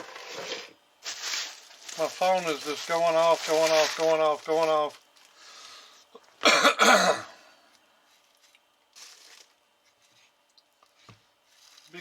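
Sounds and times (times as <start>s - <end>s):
man coughing: 6.4s - 7.4s.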